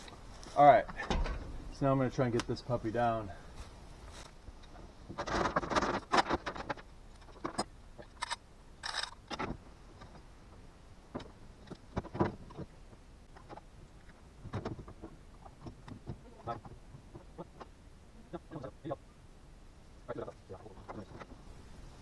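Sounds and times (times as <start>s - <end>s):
spare wheel knocks and rattles: 0.0s - 3.4s
clunks: 0.0s - 4.2s.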